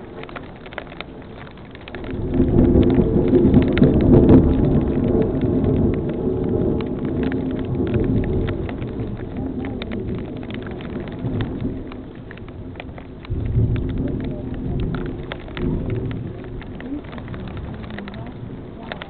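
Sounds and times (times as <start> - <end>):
heavy rain: 0.0 - 19.0
raindrops ticking nearby: 0.0 - 19.0
roll of thunder: 1.9 - 19.0.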